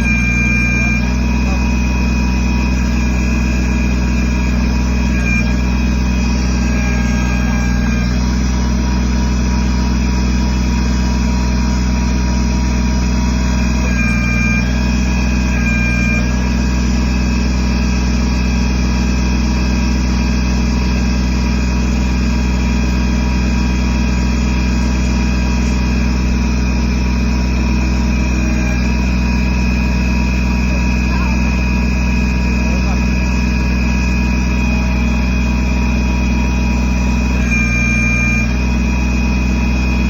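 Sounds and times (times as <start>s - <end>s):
diesel engine running: 0.0s - 40.0s.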